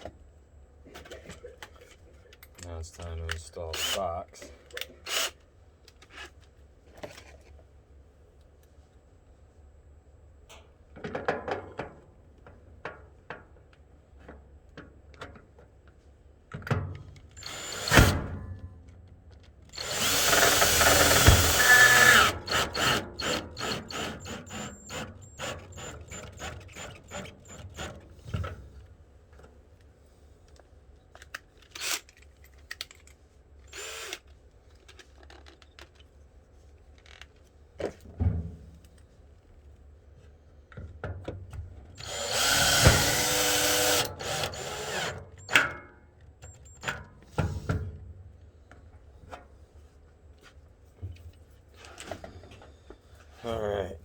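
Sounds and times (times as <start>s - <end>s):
power drill driving a screw: 3.8s - 4.0s, 5.1s - 5.4s, 17.4s - 18.2s, 19.7s - 27.9s, 31.8s - 32.0s, 33.7s - 34.2s, 42.0s - 45.6s
clicks and knocks of parts handled: 29.3s - 33.2s, 34.1s - 36.2s.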